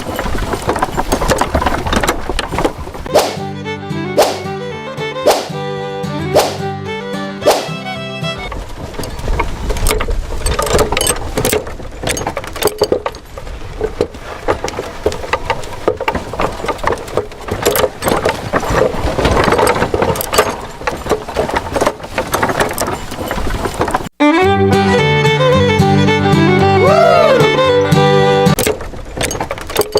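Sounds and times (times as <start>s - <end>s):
parts rattling and clicking: 0.0s - 3.4s, 8.4s - 24.2s, 28.5s - 29.9s
music: 3.1s - 8.5s, 24.2s - 28.6s.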